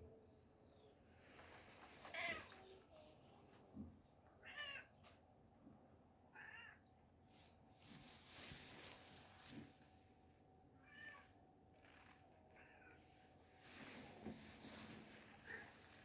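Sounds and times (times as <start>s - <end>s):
cat meowing: 4.4s - 4.9s, 6.3s - 6.8s, 10.8s - 11.4s.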